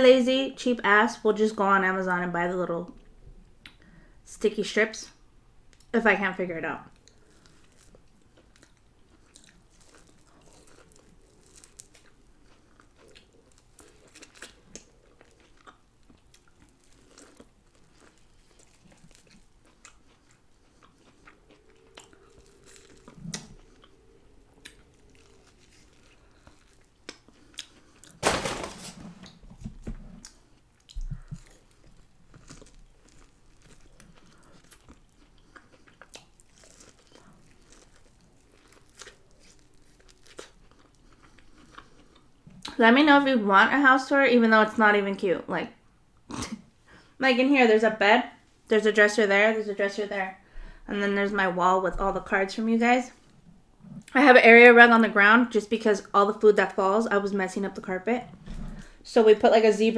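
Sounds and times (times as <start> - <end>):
person chewing crunchy food: 6.9 - 28.2, 30.1 - 42.7.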